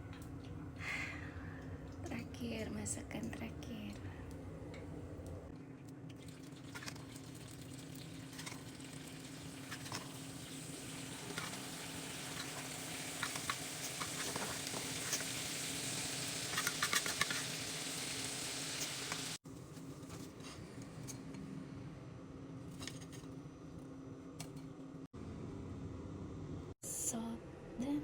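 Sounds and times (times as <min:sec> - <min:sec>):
food sizzling in hot oil: 0:07.1 - 0:19.4.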